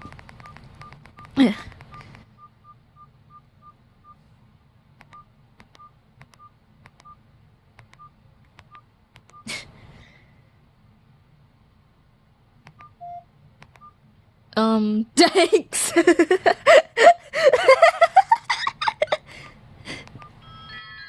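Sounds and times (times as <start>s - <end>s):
phone keypad beeps: 0.0s - 4.2s, 5.1s - 7.2s, 12.8s - 13.2s, 13.8s - 14.0s.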